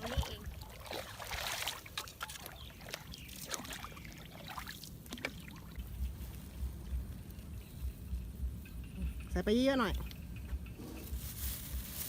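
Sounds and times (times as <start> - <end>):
paddle splashing through water: 0.0 - 5.8.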